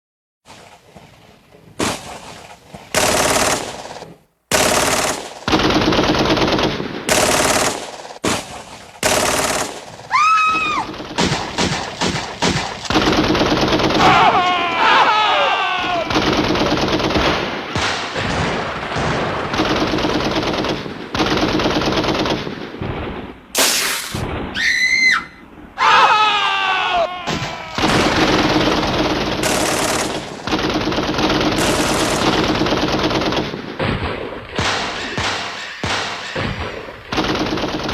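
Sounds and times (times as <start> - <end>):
automatic gunfire bursts: 2.9 - 8.1, 9.0 - 10.0, 27.8 - 33.7, 37.0 - 37.9.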